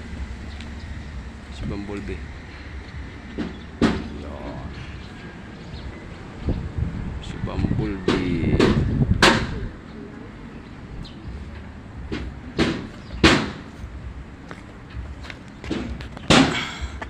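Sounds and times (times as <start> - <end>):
sharp knocks: 3.3 - 4.4, 8.1 - 9.6, 12.1 - 13.7, 15.6 - 17.0.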